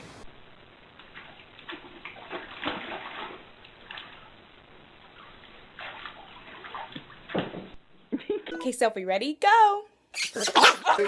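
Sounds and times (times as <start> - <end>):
water splashing: 1.0 - 4.4, 5.0 - 7.8.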